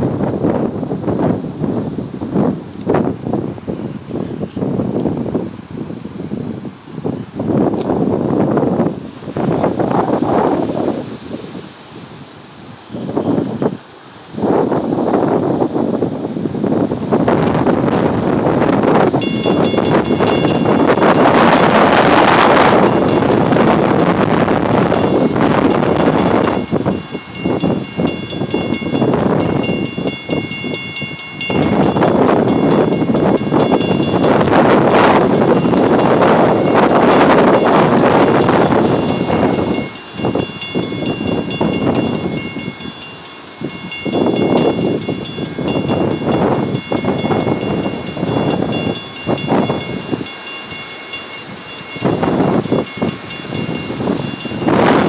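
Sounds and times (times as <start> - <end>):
wind buffeting microphone: 0.0 - 55.0
freight train rolling past: 16.9 - 55.0.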